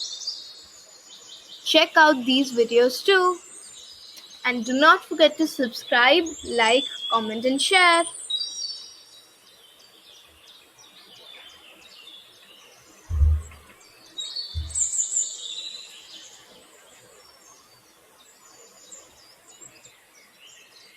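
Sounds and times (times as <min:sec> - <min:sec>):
birds chirping and trilling: 0:00.2 - 0:16.3
dull low thumps: 0:13.1 - 0:13.7, 0:14.6 - 0:14.9.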